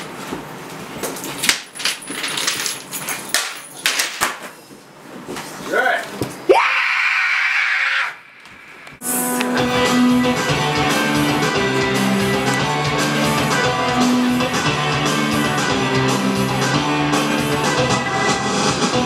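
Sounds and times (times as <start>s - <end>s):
rock guitar and drum beat: 9.0s - 19.0s.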